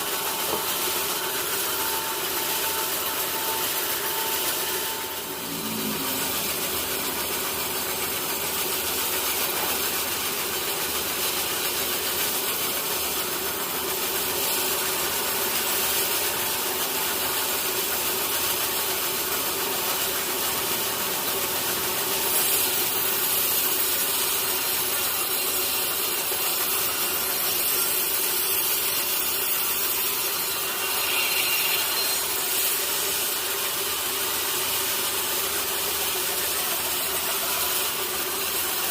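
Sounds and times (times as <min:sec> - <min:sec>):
saw blade hissing through wood: 0:00.0 - 0:38.9
low machine hum: 0:03.3 - 0:11.0.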